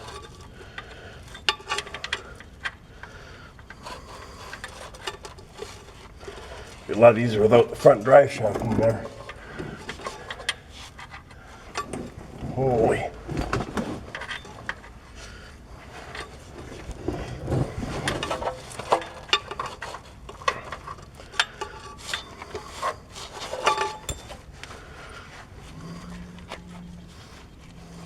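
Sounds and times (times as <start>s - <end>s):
metal clicks and clinks: 23.4s - 24.8s.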